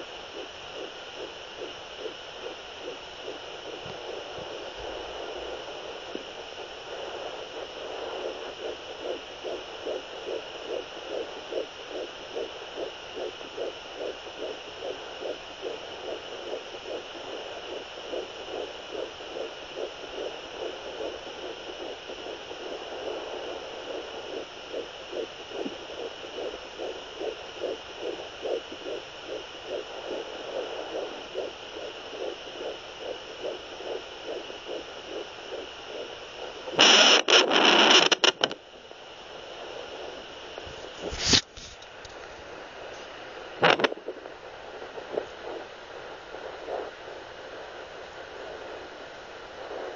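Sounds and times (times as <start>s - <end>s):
fetal heartbeat pulses: 0.0s - 41.2s, 42.2s - 49.9s
steady hiss: 0.0s - 49.9s.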